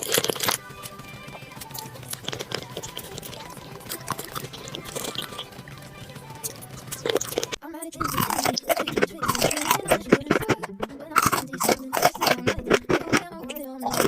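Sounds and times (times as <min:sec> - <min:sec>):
person chewing crisp food: 0:00.0 - 0:00.7, 0:01.6 - 0:05.6, 0:06.5 - 0:14.0.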